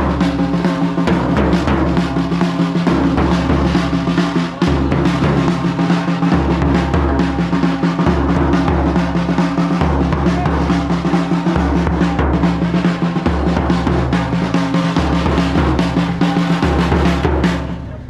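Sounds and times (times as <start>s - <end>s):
heavy drum beat: 0.0s - 18.0s.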